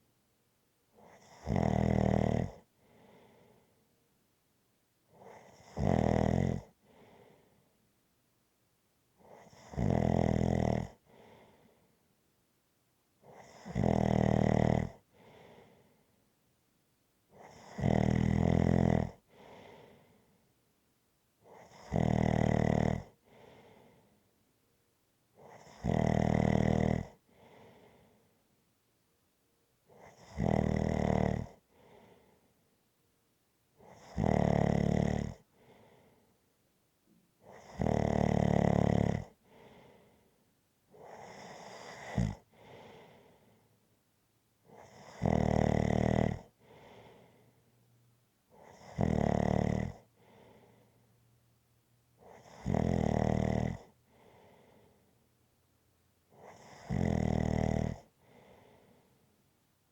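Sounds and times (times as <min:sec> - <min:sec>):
person snoring: 0:01.1 - 0:02.6, 0:05.2 - 0:06.7, 0:09.4 - 0:11.0, 0:13.4 - 0:15.0, 0:17.4 - 0:19.8, 0:21.6 - 0:23.5, 0:25.5 - 0:27.2, 0:30.0 - 0:31.6, 0:33.9 - 0:35.4, 0:37.5 - 0:39.8, 0:41.0 - 0:43.2, 0:44.7 - 0:47.3, 0:48.6 - 0:50.8, 0:52.2 - 0:54.5, 0:56.4 - 0:58.8
faint breath: 0:02.6 - 0:04.1, 0:06.7 - 0:08.0, 0:11.0 - 0:12.1, 0:15.0 - 0:16.3, 0:19.2 - 0:20.6, 0:23.1 - 0:24.5, 0:27.2 - 0:28.6, 0:31.6 - 0:32.8, 0:35.4 - 0:36.6, 0:39.3 - 0:43.9, 0:46.5 - 0:48.8, 0:49.9 - 0:51.4, 0:53.8 - 0:55.4, 0:58.0 - 0:59.9.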